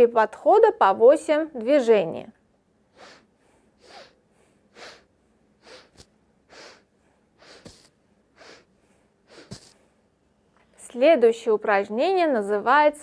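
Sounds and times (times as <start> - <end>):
sharp sniffs through the nose: 2.9 - 10.0.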